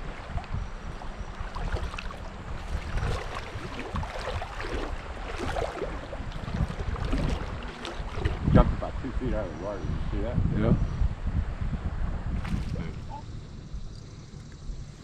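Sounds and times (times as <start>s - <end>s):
river water moving: 0.0s - 9.7s, 12.2s - 15.0s
wind rumbling on microphone: 0.0s - 15.0s
fish splashing in water: 0.9s - 8.4s.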